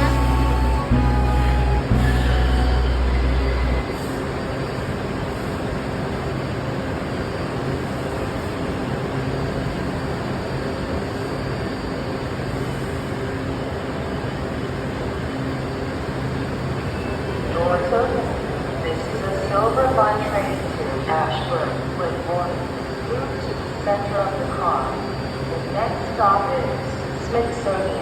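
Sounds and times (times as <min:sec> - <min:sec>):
steady even noise: 0:00.0 - 0:04.2
train rumble: 0:00.0 - 0:28.0.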